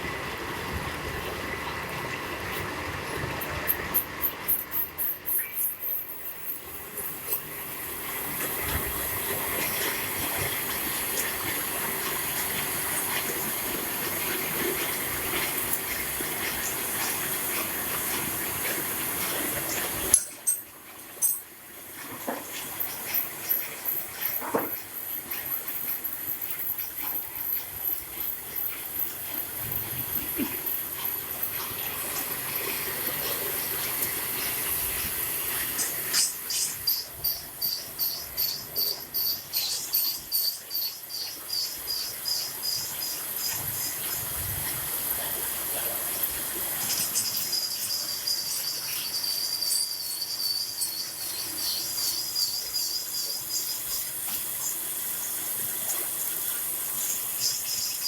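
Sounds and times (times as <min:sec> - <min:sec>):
lathe parting tool squealing: 0:35.8 - 0:43.9, 0:46.8 - 0:54.1.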